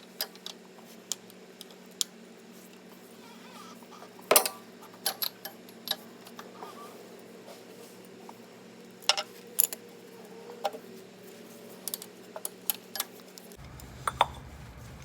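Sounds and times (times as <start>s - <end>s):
low hum: 13.6s - 15.0s.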